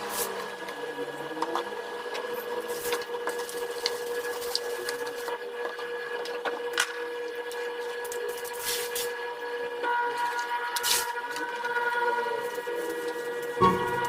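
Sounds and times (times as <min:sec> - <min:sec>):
small machine whirring: 0:00.0 - 0:14.0.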